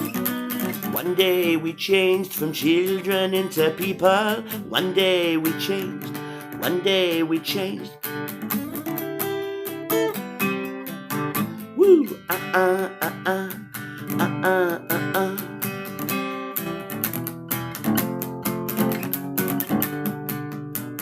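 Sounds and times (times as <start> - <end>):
acoustic guitar strumming: 0.0 - 21.0
bending guitar notes: 0.0 - 21.0
person whooping: 11.7 - 13.6.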